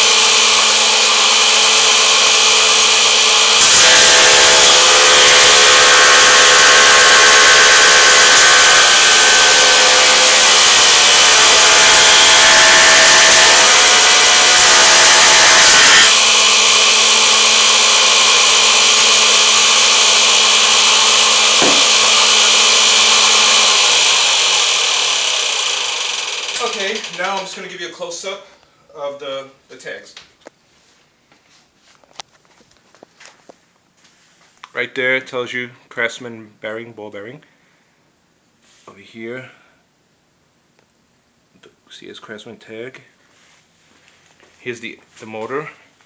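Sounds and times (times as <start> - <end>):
planer cutting through board: 0.0 - 27.6
wood planer motor hum: 0.0 - 27.6.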